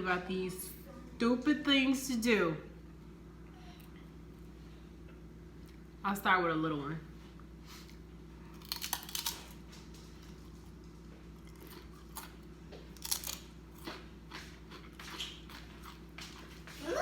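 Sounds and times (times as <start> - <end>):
crunching chip: 8.6 - 10.4, 13.0 - 13.9.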